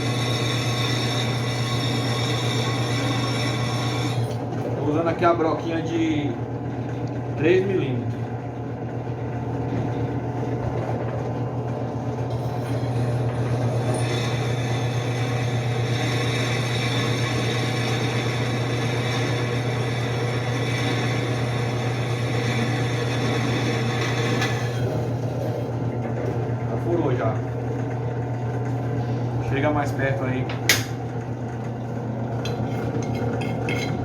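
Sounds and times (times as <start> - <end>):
drill bit grinding steel: 0.0 - 4.4, 12.3 - 25.3, 32.4 - 34.0
drill press motor humming: 0.0 - 5.6, 6.2 - 29.8.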